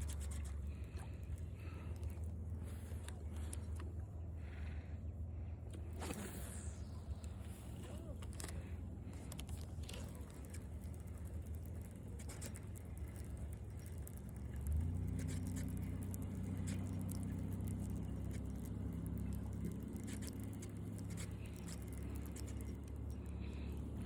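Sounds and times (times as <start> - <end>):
low engine drone: 0.0 - 24.0.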